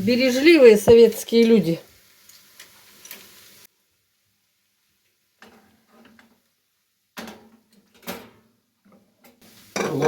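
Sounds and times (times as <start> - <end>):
kitchen utensils and dishes clinking: 9.7 - 10.0.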